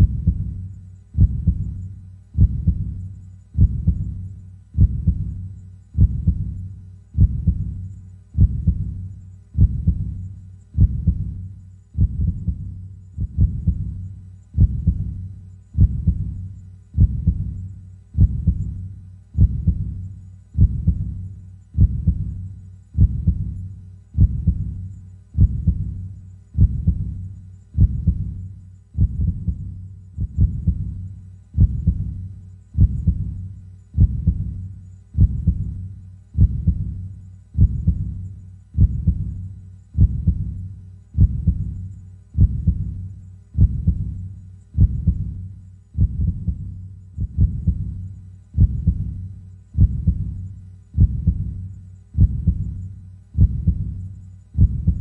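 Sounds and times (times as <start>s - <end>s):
heartbeat: 0.0s - 55.0s.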